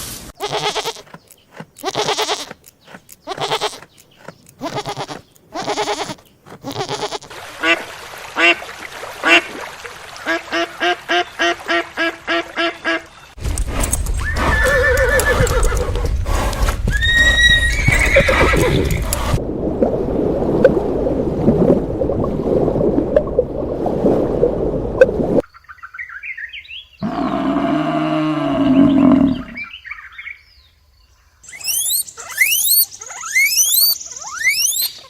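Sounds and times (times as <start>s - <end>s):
horse neighing and whinnying: 14.1s - 16.1s, 16.9s - 19.4s.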